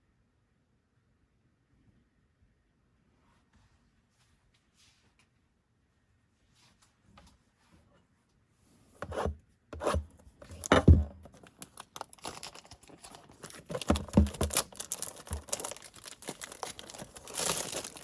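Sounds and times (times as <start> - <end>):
cardboard and wrapper rustling: 10.4 - 18.0
wrapping being torn: 11.4 - 18.0.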